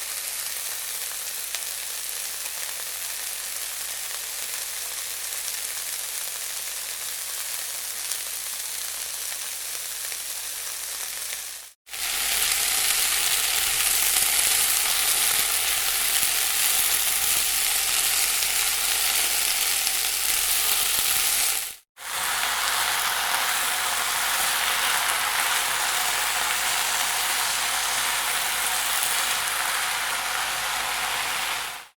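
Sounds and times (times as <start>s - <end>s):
food sizzling in a pan: 0.0s - 31.9s.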